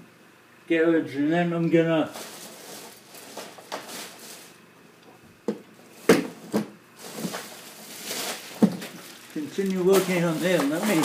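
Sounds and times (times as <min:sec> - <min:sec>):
knocks and bumps of printer: 0:05.5 - 0:06.8
short rustle: 0:07.0 - 0:11.0.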